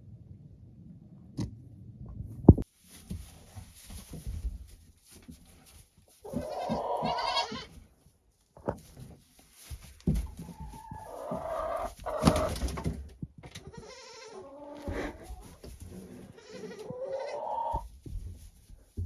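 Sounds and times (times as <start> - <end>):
goats bleating: 6.3 - 7.8, 16.3 - 17.8
light knocks and rustling: 8.6 - 11.4, 17.8 - 19.0.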